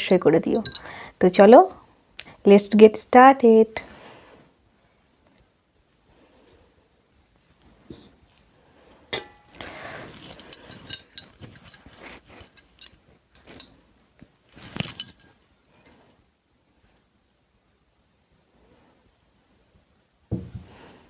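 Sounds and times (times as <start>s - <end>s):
soft rustle: 9.7s - 17.2s.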